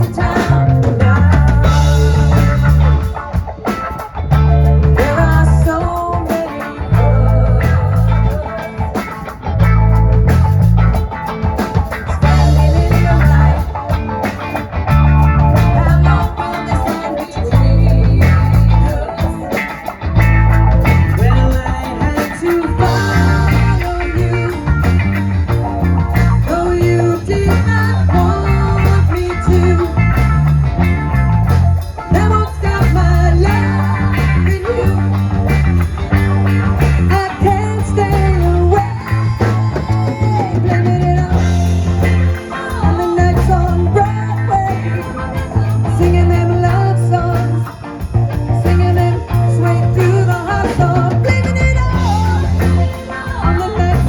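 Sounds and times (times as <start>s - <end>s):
pulsing bass line: 0.0s - 3.5s, 4.2s - 6.1s, 6.8s - 54.0s
drum kit: 0.0s - 54.0s
electric guitar: 0.0s - 54.0s
sung vocals: 0.0s - 54.0s.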